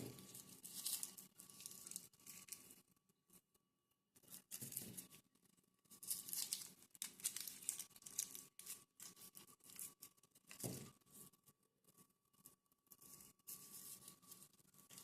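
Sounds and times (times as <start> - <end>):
papery crinkling and tearing: 0.0 - 2.8, 6.0 - 10.9.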